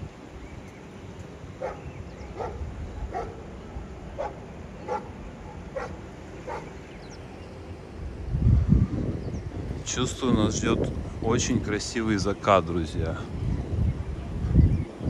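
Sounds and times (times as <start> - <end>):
dog barking: 1.6 - 3.4, 4.2 - 6.8.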